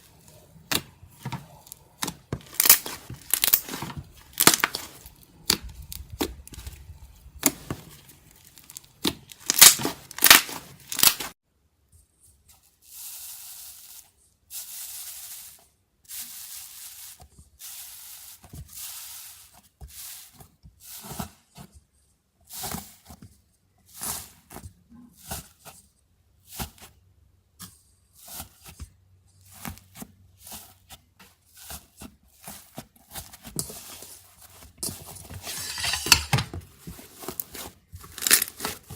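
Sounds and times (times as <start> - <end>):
slime crackling and tearing: 1.7 - 11.3, 37.3 - 38.9.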